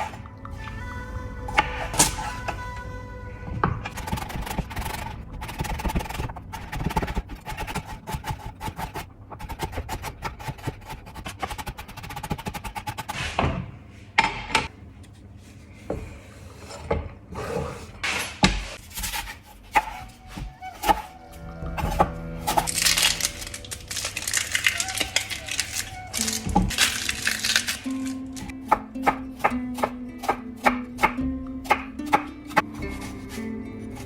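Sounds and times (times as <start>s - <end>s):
faint background music: 0.0s - 11.2s, 18.9s - 34.0s.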